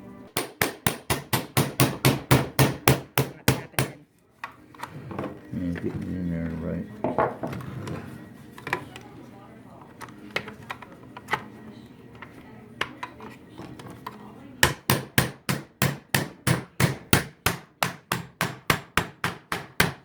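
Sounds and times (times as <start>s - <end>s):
rapid hammer blows on plastic: 0.4s - 4.0s, 14.6s - 20.0s.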